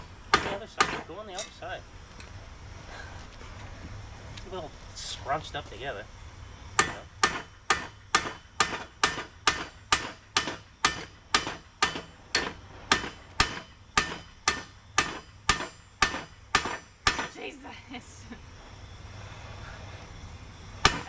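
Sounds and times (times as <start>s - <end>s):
hammer striking with a ring: 0.3s - 1.6s, 6.8s - 17.4s.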